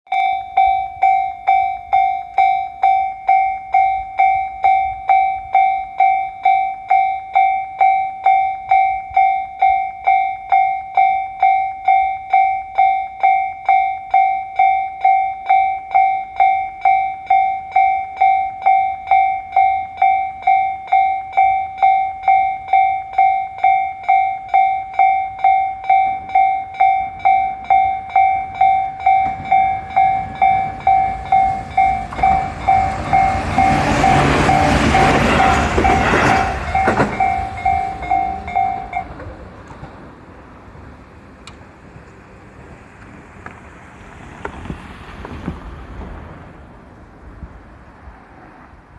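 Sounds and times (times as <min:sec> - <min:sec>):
level crossing warning bell: 0:00.1 - 0:39.5
train rumble: 0:25.4 - 0:48.9.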